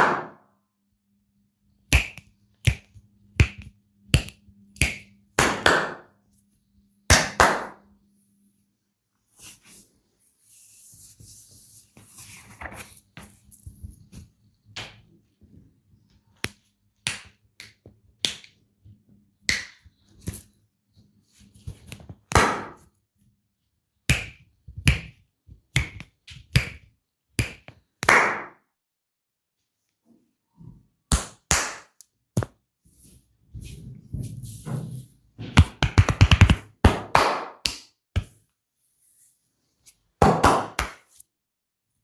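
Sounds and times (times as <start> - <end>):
hands slapping and patting skin: 1.9 - 5.9, 24.1 - 28.5, 35.6 - 38.4, 40.2 - 41.2.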